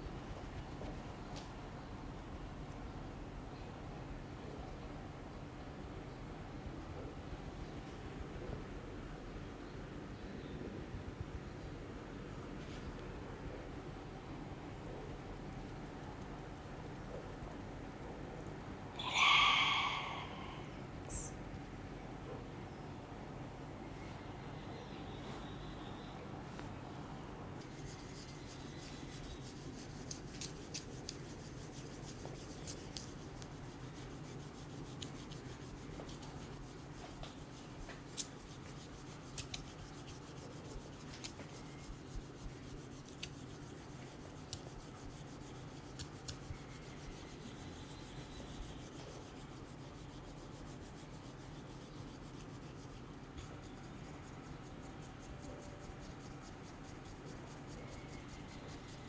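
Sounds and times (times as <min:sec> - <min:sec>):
hands rubbing skin and hair: 0:27.6 - 0:59.0.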